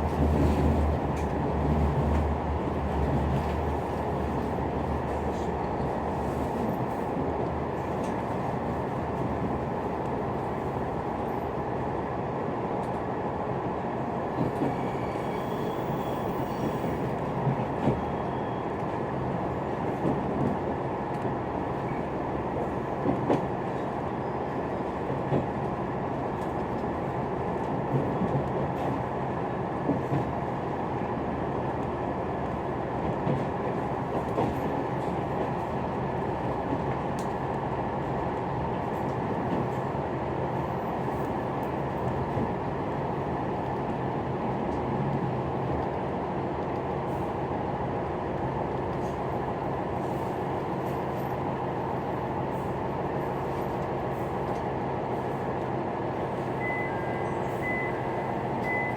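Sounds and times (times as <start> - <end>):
railcar cabin rumble: 0.0 - 58.9.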